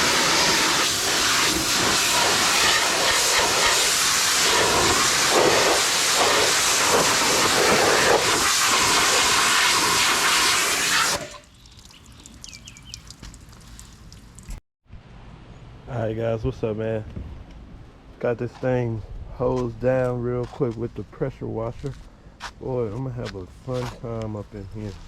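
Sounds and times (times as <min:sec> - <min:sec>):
pressure washer spraying water: 0:00.0 - 0:11.4.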